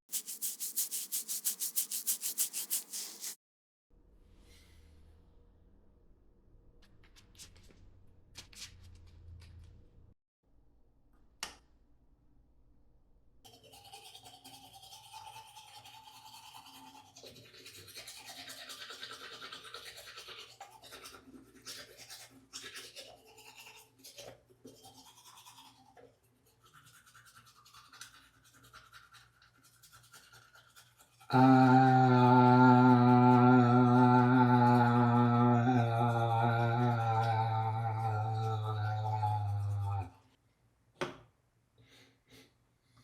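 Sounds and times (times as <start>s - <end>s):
teeth brushing: 0.0s - 3.4s, 13.5s - 31.7s, 35.8s - 40.2s
chant-like humming music: 31.3s - 40.1s.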